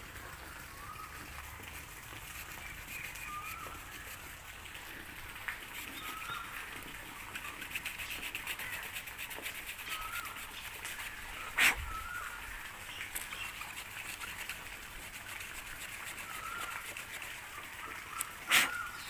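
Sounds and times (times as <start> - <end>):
bird chirping: 2.3 - 4.2, 5.8 - 6.6
saw blade cutting a branch: 10.9 - 12.2, 18.4 - 18.9.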